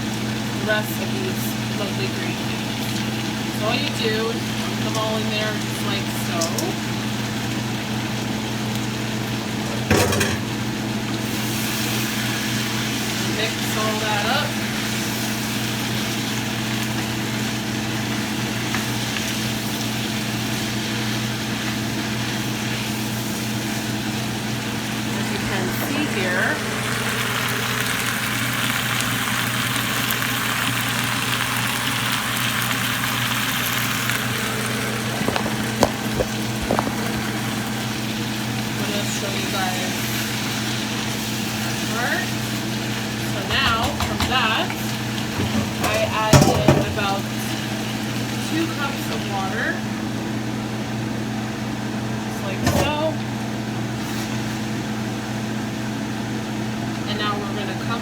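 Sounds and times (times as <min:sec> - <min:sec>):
low machine hum: 0:00.0 - 0:58.0
kitchenware knocking a pot: 0:09.7 - 0:10.5, 0:43.4 - 0:44.8, 0:45.4 - 0:47.2, 0:52.6 - 0:53.0.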